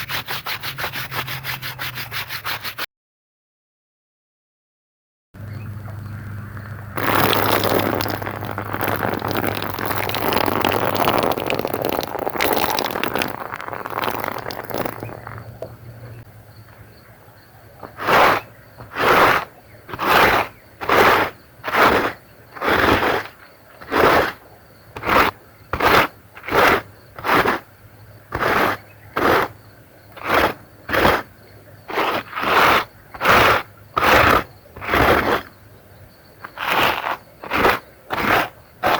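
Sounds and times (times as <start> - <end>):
strokes across wet carpet: 7.0 - 15.7
crackly scraping noise: 7.0 - 16.3, 17.8 - 24.4, 28.4 - 31.3, 31.9 - 35.6, 36.4 - 38.9.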